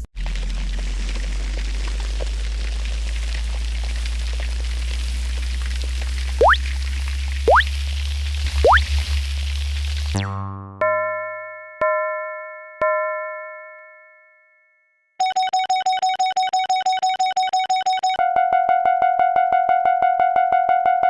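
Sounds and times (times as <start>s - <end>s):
tone sliding down in pitch: 7.5s - 7.7s
bell-like dings: 10.8s - 15.2s.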